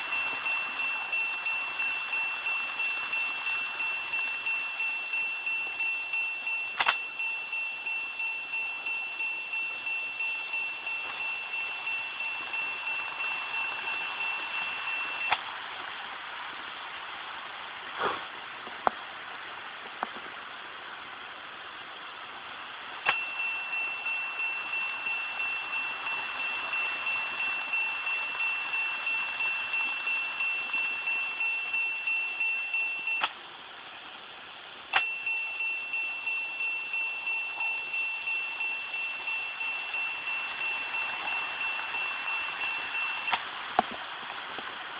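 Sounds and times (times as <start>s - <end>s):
electronic level crossing bell: 0.0s - 15.4s, 23.0s - 33.4s, 34.9s - 43.4s
model trains whirring: 0.0s - 44.9s.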